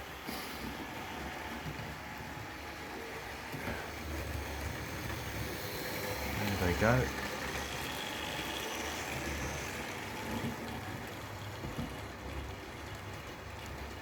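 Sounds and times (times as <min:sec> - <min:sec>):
model train motor hum: 0:00.0 - 0:14.0
model train wheel rumble: 0:00.0 - 0:14.0.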